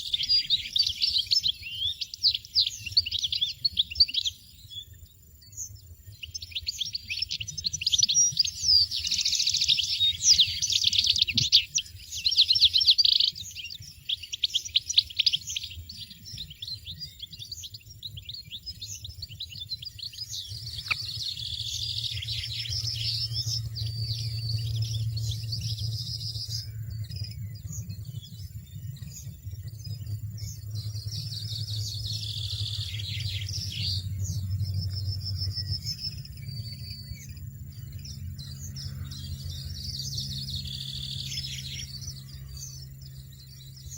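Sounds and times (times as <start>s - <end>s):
goldfinches chirping: 0.0s - 43.9s
low steady drone: 18.9s - 43.9s.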